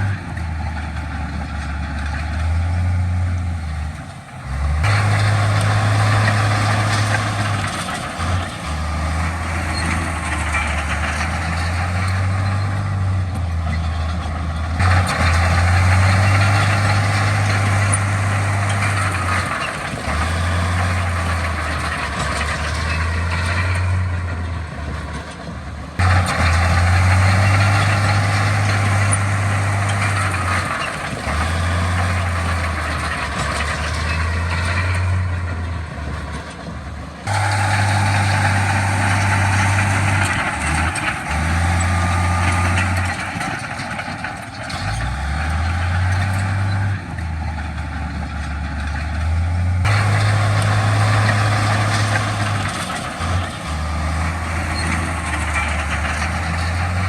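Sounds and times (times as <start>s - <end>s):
heavy machinery diesel engines: 0.0s - 57.0s.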